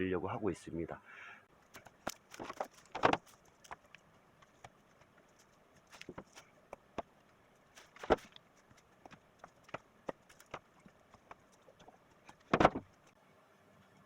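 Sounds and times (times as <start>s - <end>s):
firewood logs knocking together: 1.6s - 13.1s.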